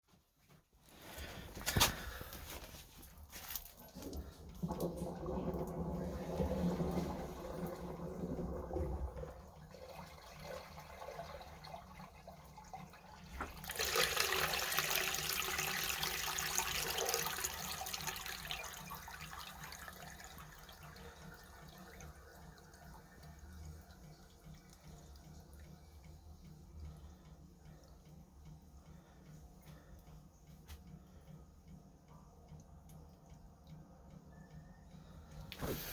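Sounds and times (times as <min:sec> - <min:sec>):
water rushing through drain: 0:03.8 - 0:27.1.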